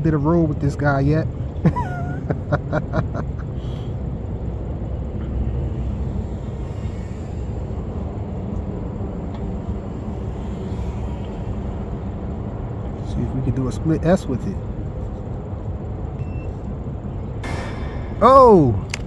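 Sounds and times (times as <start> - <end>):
heavy low rumble: 17.4 - 19.0.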